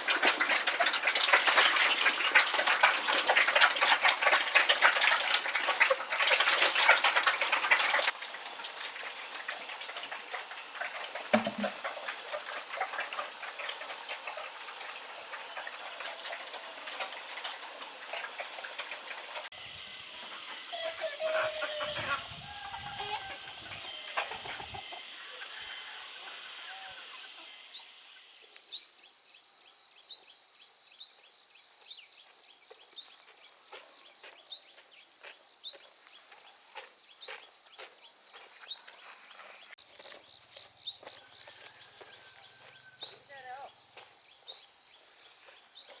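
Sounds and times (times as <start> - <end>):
rustling and clatter: 0.0 - 19.5
bird chirping: 34.5 - 46.0.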